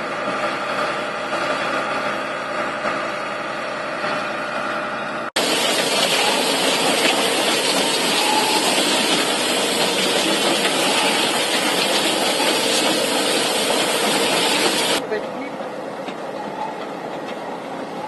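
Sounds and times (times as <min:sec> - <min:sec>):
heavy machinery rushing noise: 0:05.4 - 0:15.0.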